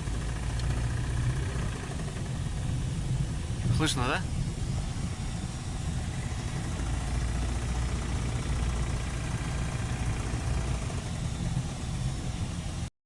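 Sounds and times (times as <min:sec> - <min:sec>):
engine valve knocking: 0:00.0 - 0:02.8, 0:06.2 - 0:11.2
car engine droning: 0:00.0 - 0:12.9.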